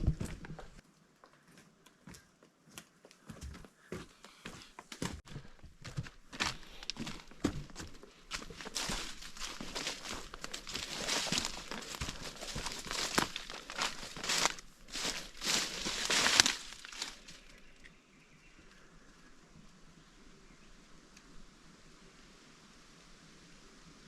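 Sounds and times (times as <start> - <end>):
footsteps crunching through leaf litter: 5.4 - 17.6.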